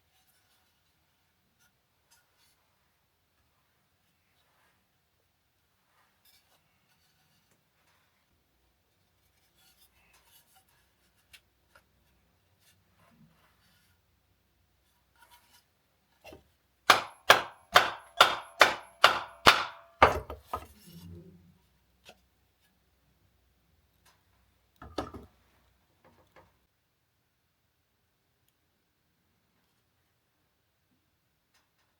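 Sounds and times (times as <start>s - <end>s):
hammer striking wood: 16.9s - 20.6s.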